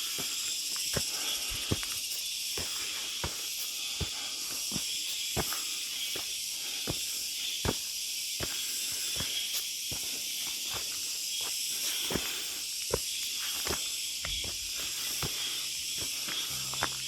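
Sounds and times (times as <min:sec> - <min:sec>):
steady high hiss: 0:00.0 - 0:17.0
footsteps walking: 0:12.9 - 0:17.0.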